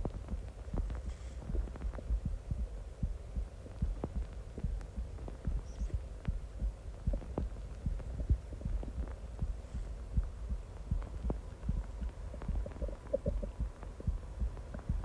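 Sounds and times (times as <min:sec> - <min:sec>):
stomach growling and gurgling: 0:12.0 - 0:13.8.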